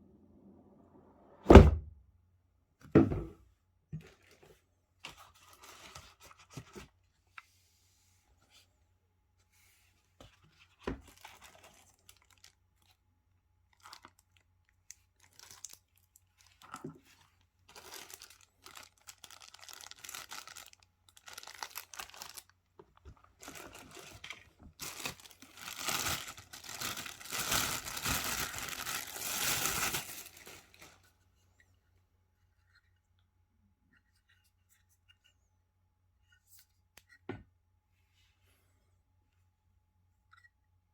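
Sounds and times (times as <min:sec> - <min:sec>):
packaging tearing and crinkling: 0:15.2 - 0:16.7, 0:17.7 - 0:22.5, 0:23.4 - 0:31.0.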